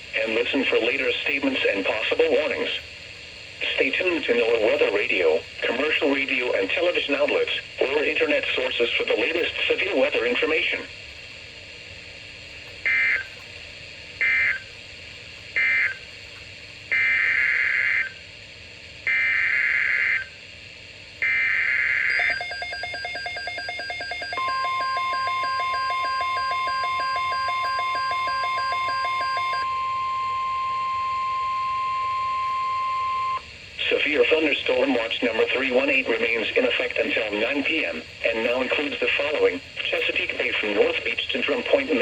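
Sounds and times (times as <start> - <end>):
steady warning alarm tone: 12.8 - 13.4, 14.2 - 14.7, 15.6 - 16.1, 16.9 - 18.2, 19.0 - 20.4, 21.2 - 40.2
screeching digital data bursts: 21.2 - 39.3
pulsing electronic beeping: 22.1 - 33.4.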